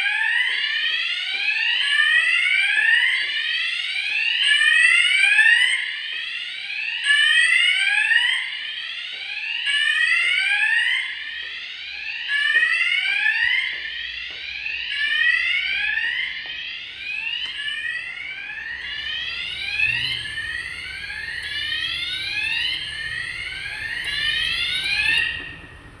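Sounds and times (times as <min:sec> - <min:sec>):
fire alarm rising sweep tone: 0:00.0 - 0:26.0.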